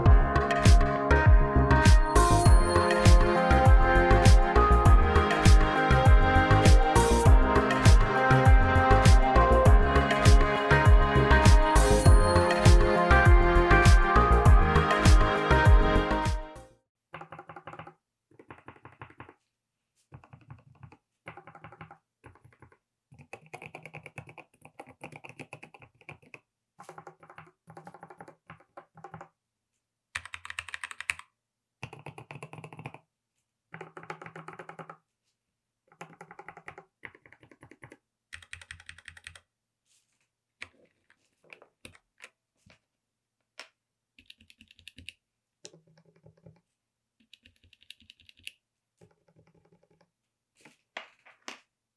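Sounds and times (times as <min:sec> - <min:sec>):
typing on mechanical keyboard: 0:17.2 - 0:19.4, 0:20.2 - 0:29.3, 0:30.2 - 0:33.1, 0:33.7 - 0:35.0, 0:35.9 - 0:39.5, 0:44.2 - 0:46.6, 0:47.2 - 0:50.1.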